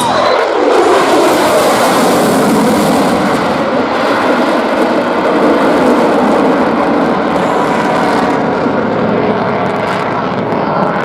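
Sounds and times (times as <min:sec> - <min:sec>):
loud jet flying overhead: 0:00.0 - 0:11.0.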